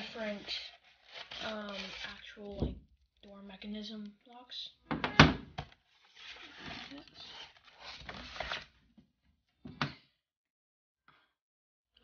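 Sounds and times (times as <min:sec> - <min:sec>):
packaging rustling: 0:00.0 - 0:02.6, 0:05.9 - 0:08.7.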